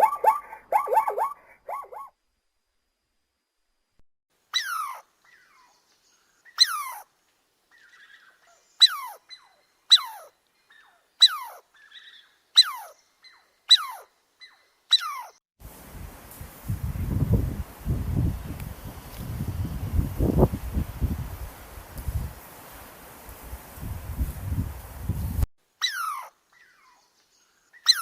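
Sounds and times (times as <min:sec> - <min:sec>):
wind on microphone: 0:15.6 - 0:22.5, 0:23.3 - 0:25.5
animal high falling cries: 0:25.8 - 0:26.3.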